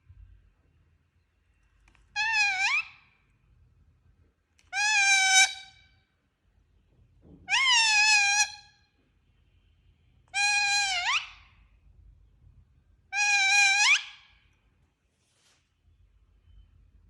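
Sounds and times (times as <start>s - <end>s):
parrot calling: 2.1s - 3.2s, 4.7s - 5.8s, 7.5s - 8.6s, 10.3s - 11.5s, 13.1s - 14.3s.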